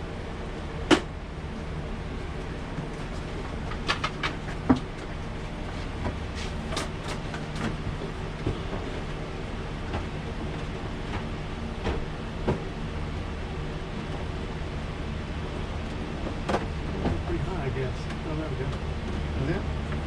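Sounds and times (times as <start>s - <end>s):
low mechanical hum: 0.0s - 20.0s.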